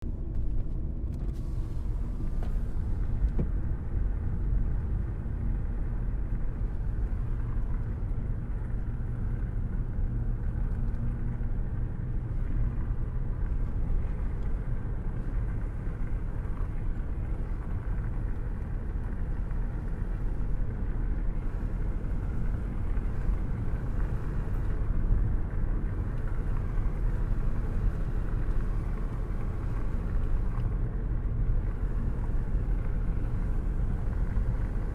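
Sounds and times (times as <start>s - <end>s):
rainstorm rumble: 25.8s - 30.7s.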